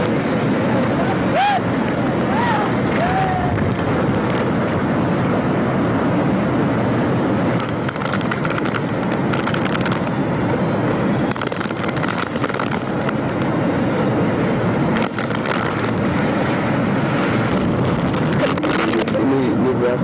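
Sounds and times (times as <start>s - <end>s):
heavy rain: 0.0s - 6.0s
strong wind: 0.0s - 20.0s
wind buffeting microphone: 0.0s - 20.0s.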